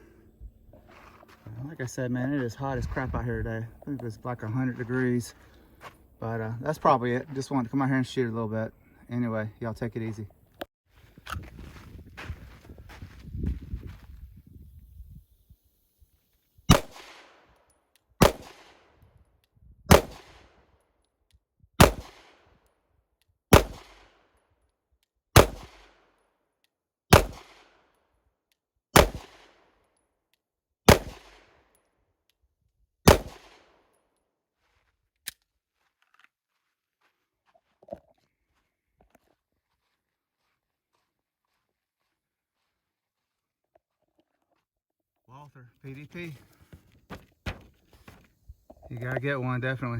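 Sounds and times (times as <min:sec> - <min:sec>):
pistol shots with echo: 0:16.7 - 0:17.4, 0:18.2 - 0:18.8, 0:19.9 - 0:20.5, 0:21.8 - 0:22.4, 0:23.5 - 0:24.1, 0:25.4 - 0:26.0, 0:27.1 - 0:27.8, 0:29.0 - 0:29.6, 0:30.9 - 0:31.5, 0:33.1 - 0:33.8.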